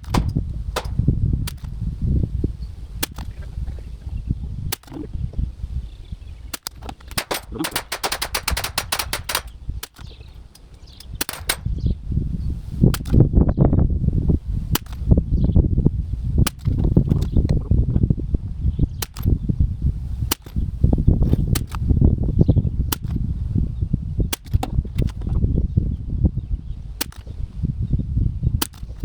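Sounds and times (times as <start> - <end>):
rifle cracks and clicks: 0.0 - 1.7, 6.5 - 11.7
wind rumbling on microphone: 0.0 - 29.0.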